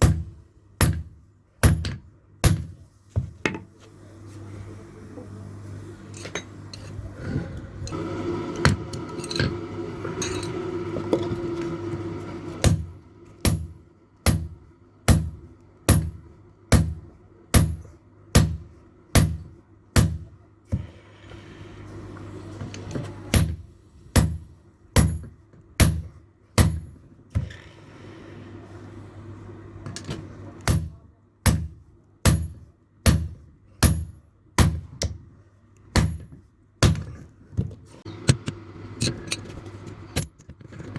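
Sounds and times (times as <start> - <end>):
hammer striking steel on anvil: 0.0 - 2.8, 12.6 - 18.6, 19.2 - 20.2, 23.3 - 27.0, 30.6 - 35.2
steady low hum: 0.0 - 40.9.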